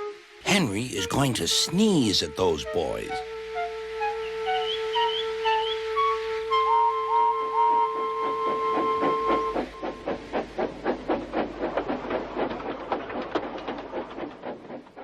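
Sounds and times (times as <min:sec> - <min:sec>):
held music notes: 0:00.4 - 0:03.3
steam locomotive exhaust chuffing: 0:00.5 - 0:15.0.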